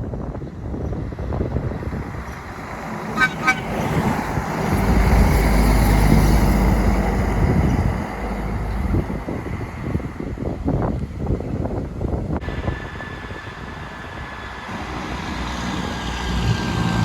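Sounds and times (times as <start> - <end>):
truck passing with engine rumble: 0.0 - 17.0
truck horn honks: 3.1 - 4.1.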